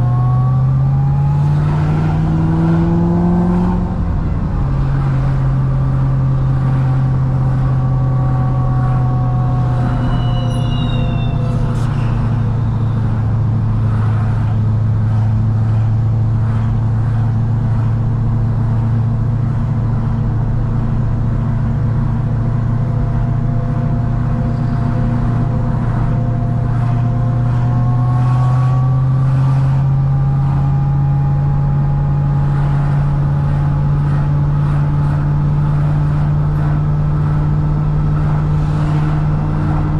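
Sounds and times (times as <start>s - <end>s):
car engine running at low revs: 0.0s - 39.9s.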